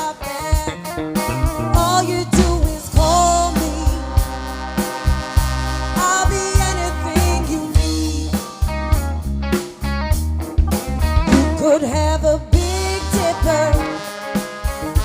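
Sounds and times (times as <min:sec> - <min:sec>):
band playing funk groove: 0:00.0 - 0:15.0
wavering lead melody: 0:00.6 - 0:09.7
pulsing bass line: 0:00.6 - 0:14.0
drum kit hits: 0:00.7 - 0:11.8.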